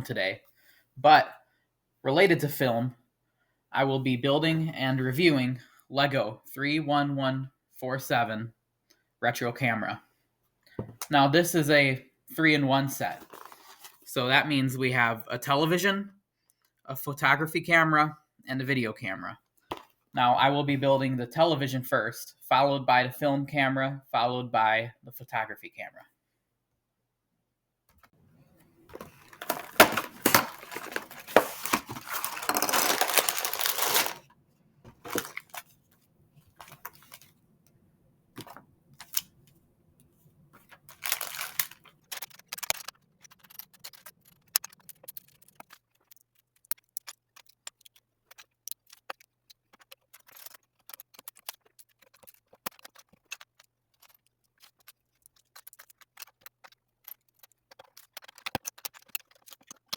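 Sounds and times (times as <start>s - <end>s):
plastic packaging rustling and tearing: 13.1s - 14.1s, 28.9s - 34.3s, 34.9s - 35.8s, 36.6s - 37.4s, 38.4s - 39.3s, 40.7s - 47.2s
plastic pieces rattling: 28.9s - 34.2s, 35.0s - 35.7s, 40.8s - 59.9s
plastic bricks clicking together: 41.1s - 59.9s.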